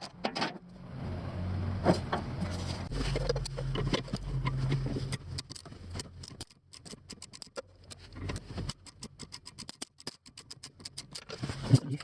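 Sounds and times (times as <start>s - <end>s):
ratchet wrench clicking: 8.7s - 11.3s.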